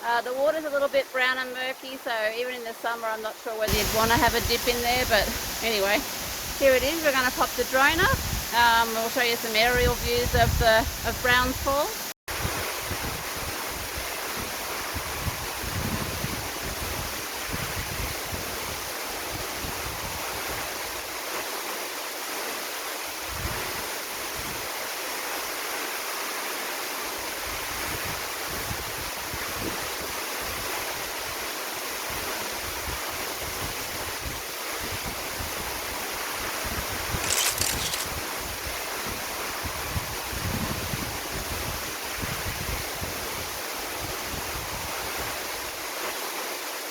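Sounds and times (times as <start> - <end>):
waterfall rushing: 2.1 - 27.5.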